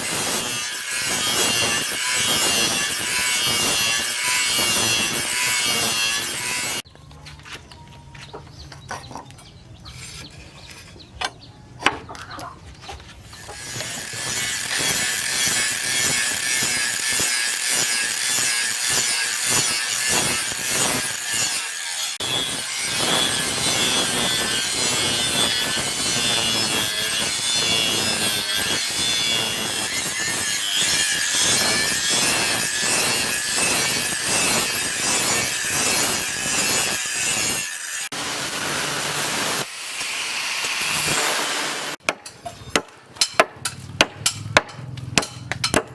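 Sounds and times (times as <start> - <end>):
steel grinding with high whine: 0.0 - 6.8, 13.4 - 42.0.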